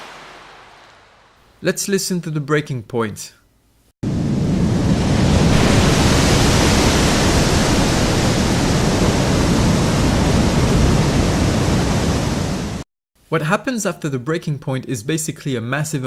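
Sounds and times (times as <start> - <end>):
crashing rushing water: 0.0 - 1.5, 4.0 - 12.8
explosion impact: 0.0 - 1.6, 4.1 - 10.0.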